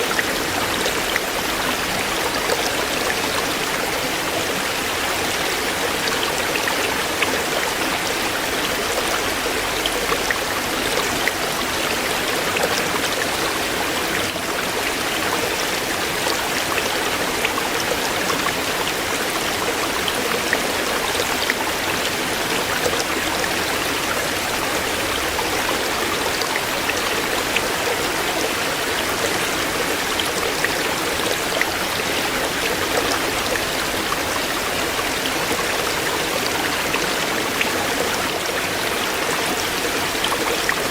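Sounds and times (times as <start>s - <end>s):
stream water splashing over stones: 0.0s - 40.9s.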